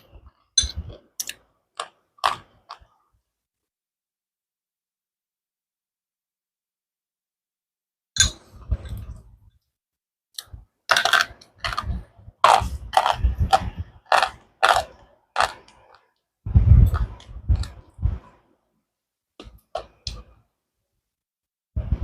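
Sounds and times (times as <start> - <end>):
crunchy chewing: 1.2 - 2.9, 10.4 - 16.2.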